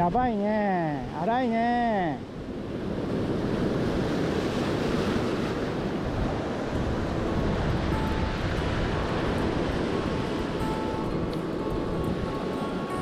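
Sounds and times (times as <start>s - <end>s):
surf washing against rocks: 0.0s - 13.0s
wind buffeting microphone: 2.3s - 13.0s.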